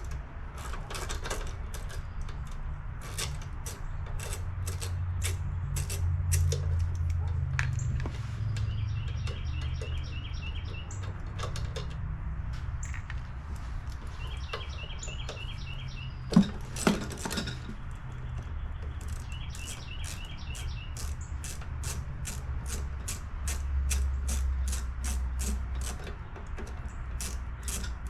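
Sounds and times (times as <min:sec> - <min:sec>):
hand tools clinking on metal: 0:00.0 - 0:07.9, 0:13.9 - 0:28.0
birds chirping: 0:06.5 - 0:21.7.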